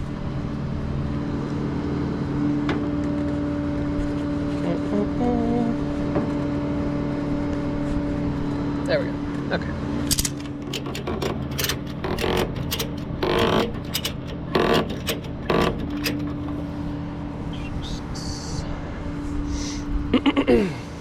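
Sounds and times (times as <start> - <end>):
strap hardware clicks and clanks: 10.1 - 16.9
short falling squeak: 10.4 - 16.9.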